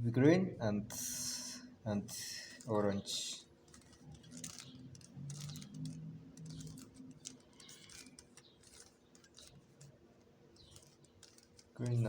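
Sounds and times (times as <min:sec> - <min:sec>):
puzzle cube plastic clicks: 0:02.4 - 0:12.0.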